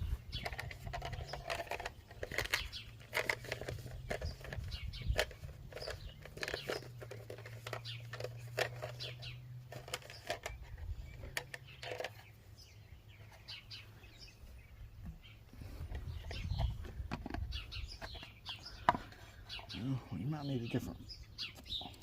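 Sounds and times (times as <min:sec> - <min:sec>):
small birds chirping: 0:00.0 - 0:22.0
clicks and knocks of handling: 0:00.4 - 0:12.3, 0:15.9 - 0:19.2.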